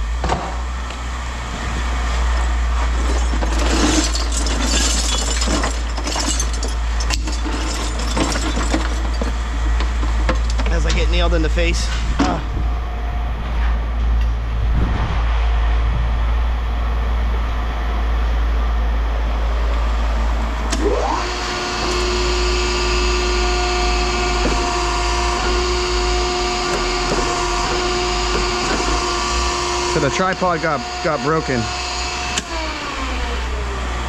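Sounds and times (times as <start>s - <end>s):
mechanical rumble and hiss: 0.0s - 22.7s
motor whine rising in pitch: 12.4s - 34.0s.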